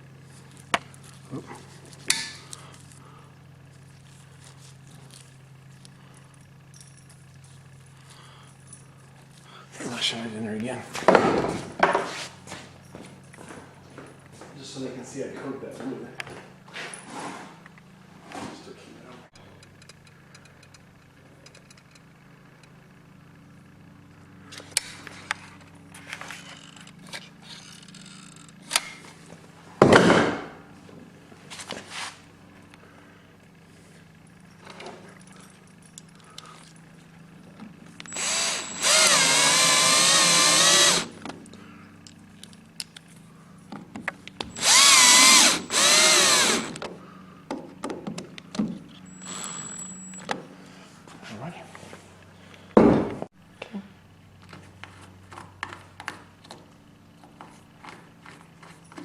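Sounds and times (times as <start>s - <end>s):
power drill drilling: 38.1s - 41.2s, 44.5s - 46.8s, 49.1s - 49.9s.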